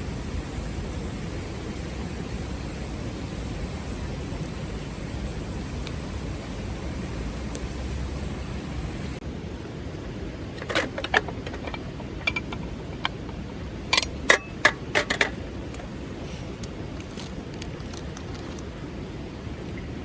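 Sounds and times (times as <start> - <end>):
metallic clinks and knocks: 10.6 - 15.4.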